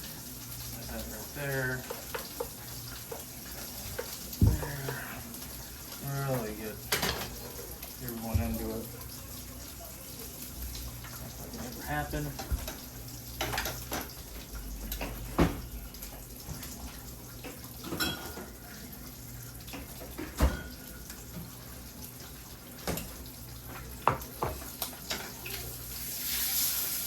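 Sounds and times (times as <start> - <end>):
frying hiss: 0.0 - 27.0
utensils clinking against dishes: 6.3 - 7.8, 17.8 - 18.6.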